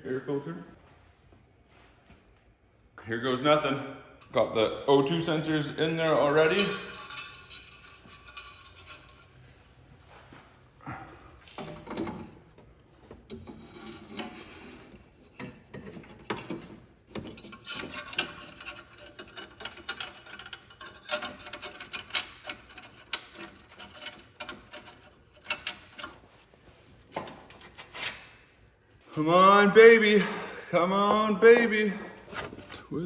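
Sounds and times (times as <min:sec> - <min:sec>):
tools and metal parts clicking: 0:06.3 - 0:09.6, 0:11.5 - 0:28.2.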